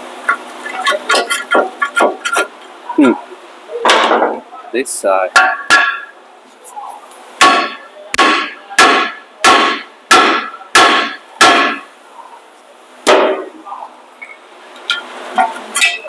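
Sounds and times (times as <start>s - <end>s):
hammer striking metal: 5.3s - 6.1s, 7.4s - 11.9s, 13.1s - 13.5s, 14.9s - 16.0s.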